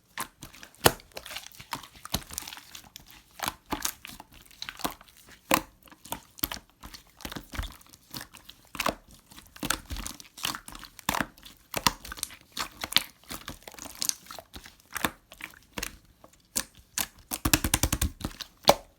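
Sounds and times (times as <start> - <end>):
slime crackling and popping: 16.6 - 18.8.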